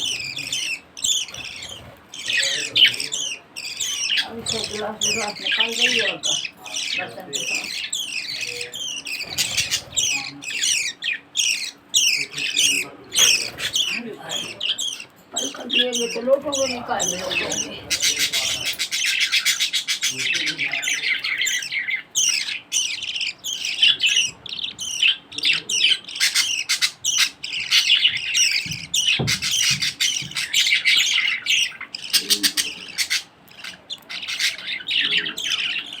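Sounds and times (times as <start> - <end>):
budgerigars chirping and squawking: 0.0 - 36.0.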